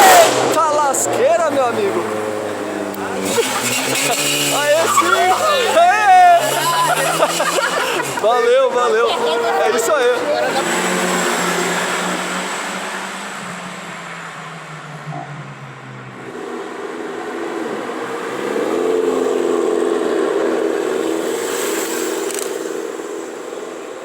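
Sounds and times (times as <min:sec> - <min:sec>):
car accelerating past: 0:00.0 - 0:24.0
car engine pulling away: 0:00.0 - 0:24.0.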